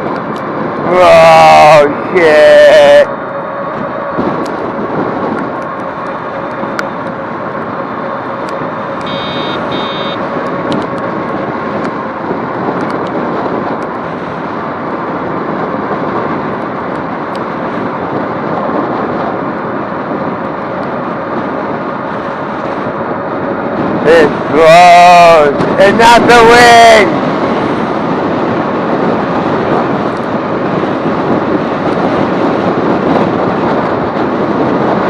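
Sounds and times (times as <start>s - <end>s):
rushing wind and road noise: 0.0s - 35.0s
short high beeps: 9.0s - 10.2s.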